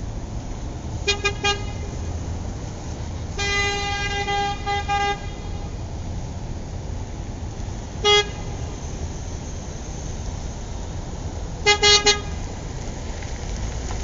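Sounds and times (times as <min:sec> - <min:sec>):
car horn toots: 0:01.0 - 0:01.9, 0:03.4 - 0:05.7, 0:08.0 - 0:08.6, 0:11.6 - 0:12.4.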